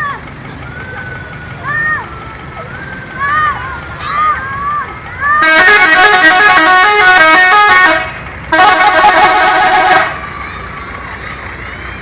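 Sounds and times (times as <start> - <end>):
bus musical horn: 5.3 - 10.3.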